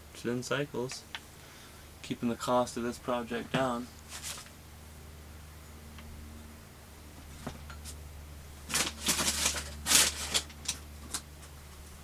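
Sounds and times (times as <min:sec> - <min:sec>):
low steady hum: 0:00.0 - 0:12.0
packaging rustling and clicking: 0:08.7 - 0:11.3.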